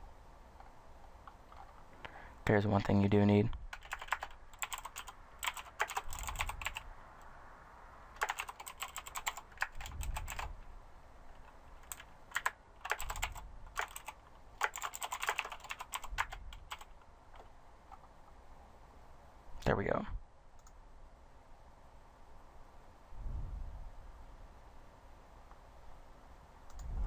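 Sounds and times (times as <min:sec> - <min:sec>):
typing on computer keyboard: 0:01.2 - 0:01.8, 0:03.7 - 0:06.8, 0:08.2 - 0:10.5, 0:11.3 - 0:18.1.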